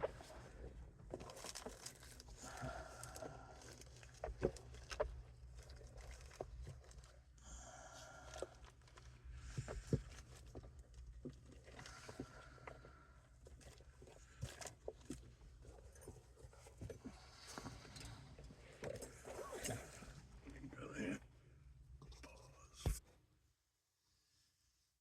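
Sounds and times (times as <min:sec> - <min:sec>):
rustling of small parts: 0:00.0 - 0:07.3.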